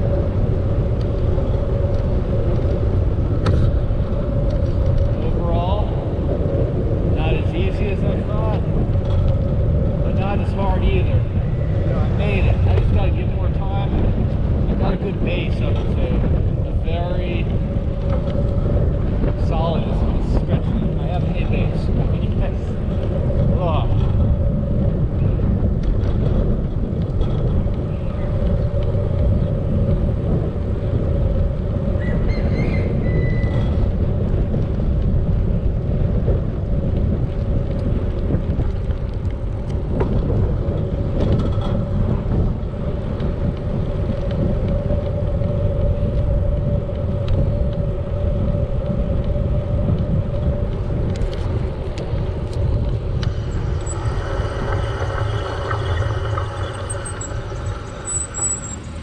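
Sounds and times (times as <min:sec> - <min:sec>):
wind rumbling on microphone: 0:00.0 - 0:59.0
steady hum: 0:33.8 - 0:59.0.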